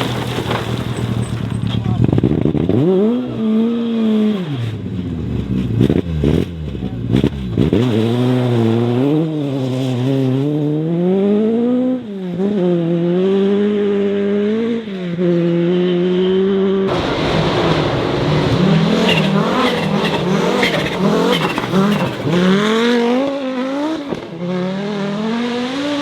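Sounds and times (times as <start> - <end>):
rally car engine accelerating: 0.0 - 26.0
engine sharp cracks: 16.9 - 23.0
rough noisy car engine: 16.9 - 24.5.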